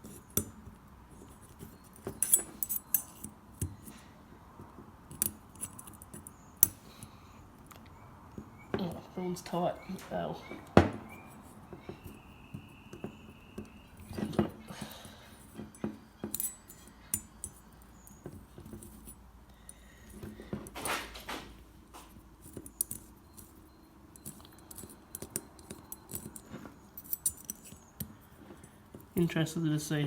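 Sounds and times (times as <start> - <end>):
allen key clicking on metal parts: 0.0 - 4.0, 5.0 - 7.7, 10.6 - 21.2, 22.1 - 29.3
loud handling noises: 0.0 - 4.0, 10.0 - 19.2, 20.0 - 29.2.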